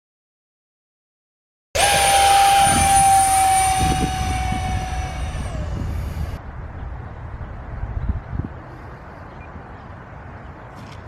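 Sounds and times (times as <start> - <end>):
rush of air: 1.8 - 6.6
electric ducted fan whine: 1.8 - 7.5.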